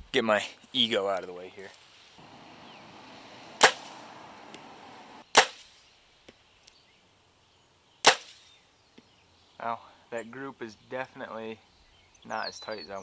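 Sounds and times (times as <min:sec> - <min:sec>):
bow shot snapping: 0:03.6 - 0:04.7, 0:05.3 - 0:05.8, 0:08.0 - 0:08.5.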